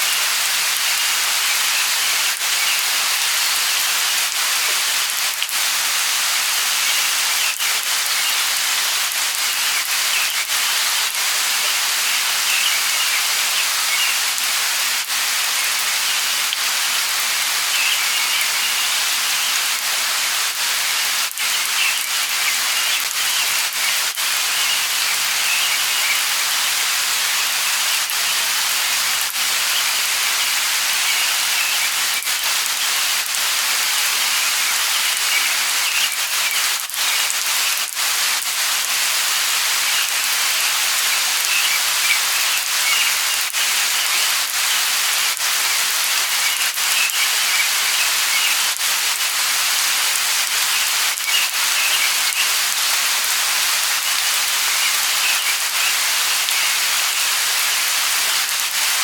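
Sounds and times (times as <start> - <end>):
light rain falling: 0.0 - 59.0
bird chirps: 12.0 - 14.2, 17.6 - 19.6, 21.4 - 26.7, 29.6 - 32.3, 34.2 - 37.3, 39.9 - 44.8, 45.7 - 48.7, 50.6 - 52.6, 54.2 - 56.9.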